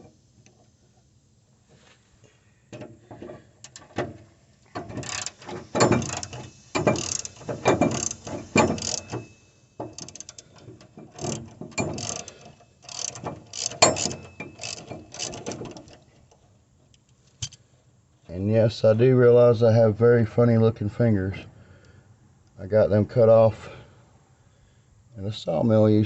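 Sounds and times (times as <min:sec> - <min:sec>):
socket ratchet clicking: 0:05.0 - 0:16.0.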